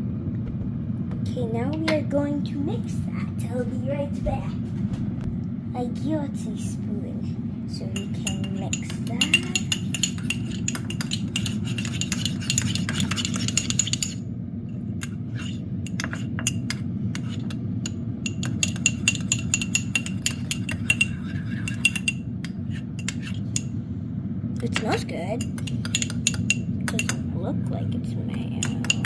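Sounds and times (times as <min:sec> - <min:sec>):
steady low hum: 0:00.0 - 0:29.0
teaspoon clinking in a bowl: 0:08.0 - 0:14.2, 0:15.0 - 0:23.7, 0:24.8 - 0:27.3, 0:28.6 - 0:29.0.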